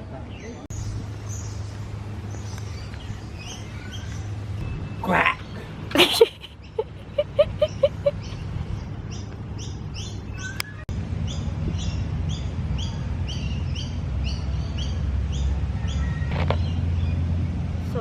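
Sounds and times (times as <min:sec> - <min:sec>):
small bird chirping: 0:00.4 - 0:05.7, 0:06.5 - 0:17.2.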